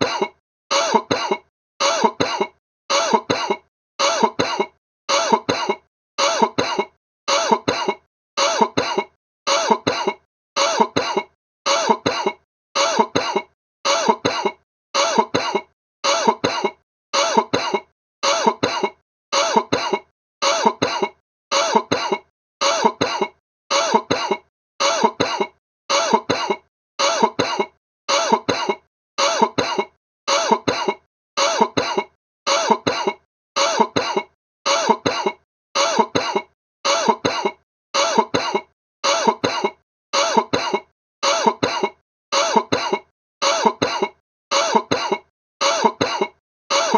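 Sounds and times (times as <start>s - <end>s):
person coughing: 0.0s - 46.9s.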